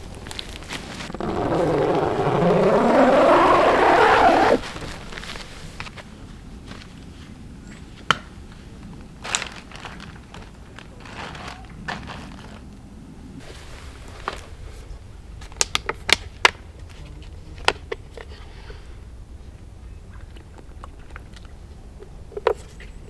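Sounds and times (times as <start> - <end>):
light rustling: 0.0 - 6.1.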